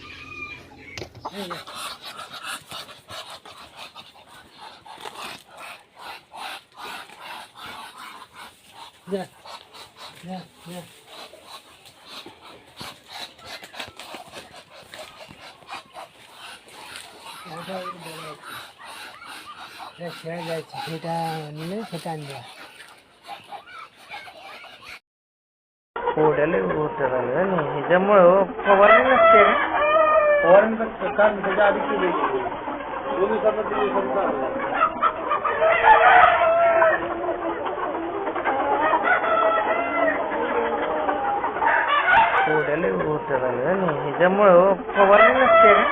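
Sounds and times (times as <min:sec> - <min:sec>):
rooster crowing: 0:00.0 - 0:01.1, 0:28.8 - 0:30.6, 0:35.5 - 0:37.1, 0:41.8 - 0:42.6, 0:45.1 - 0:45.9
chickens clucking: 0:00.0 - 0:25.0, 0:26.0 - 0:45.9
poultry scuffling and scratching: 0:00.5 - 0:25.0.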